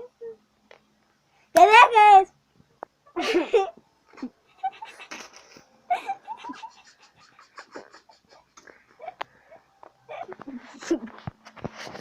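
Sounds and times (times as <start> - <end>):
children laughing and giggling: 3.1 - 9.2.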